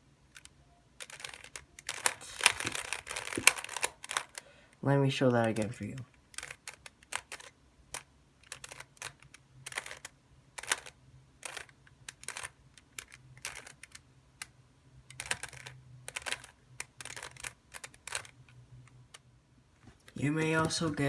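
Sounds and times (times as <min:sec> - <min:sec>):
puzzle cube clicking: 0:00.3 - 0:04.4, 0:05.3 - 0:14.5, 0:15.1 - 0:18.4.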